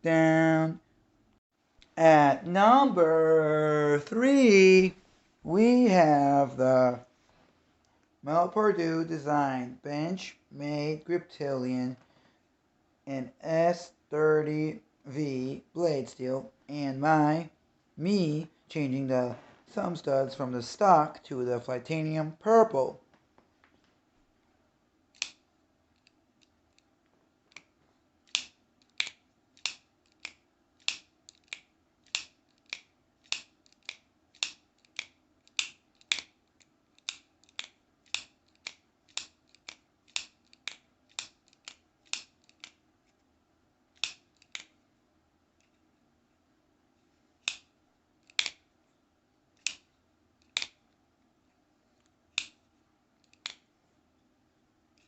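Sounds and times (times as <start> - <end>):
folding knife clicking open and shut: 25.1 - 25.4, 28.3 - 42.8, 43.9 - 44.7, 47.4 - 48.6, 49.6 - 50.8, 52.3 - 52.6, 53.2 - 53.6.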